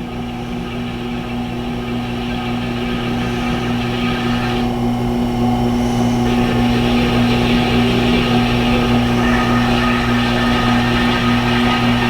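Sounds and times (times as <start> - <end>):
electric motor hum: 0.0 - 12.0
blade hissing on honing wheel: 5.7 - 12.0.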